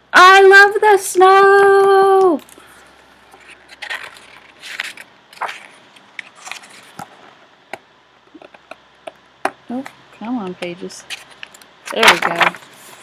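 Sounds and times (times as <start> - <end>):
book pages rustling: 2.5 - 7.3, 11.1 - 13.0
pages clicking and crinkling: 3.3 - 7.1, 11.1 - 13.0.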